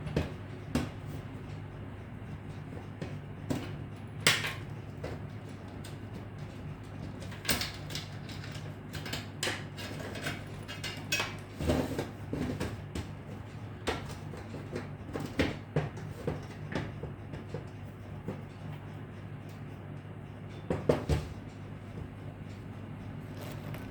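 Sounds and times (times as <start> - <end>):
steady low hum: 21.3 - 23.9.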